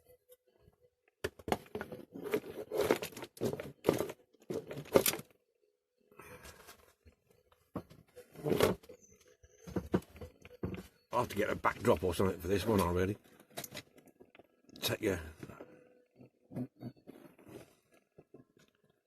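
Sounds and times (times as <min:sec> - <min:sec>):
rustling and crackling handling noise: 0:01.4 - 0:05.4.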